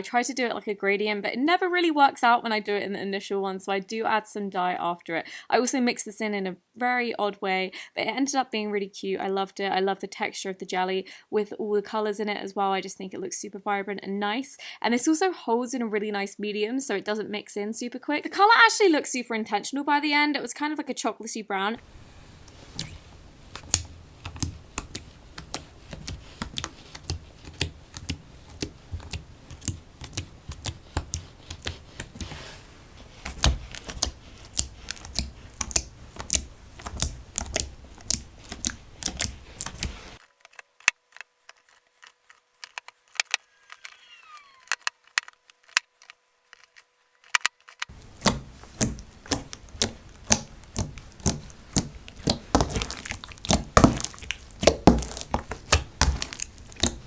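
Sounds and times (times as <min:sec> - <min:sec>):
slime clicking and popping: 0:22.5 - 0:32.3, 0:33.1 - 0:40.2, 0:47.9 - 0:57.0.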